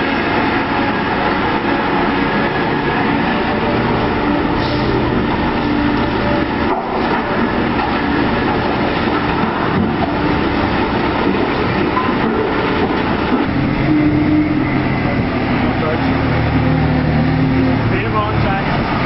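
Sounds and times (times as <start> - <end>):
heavy diesel machinery running: 0.0 - 19.0.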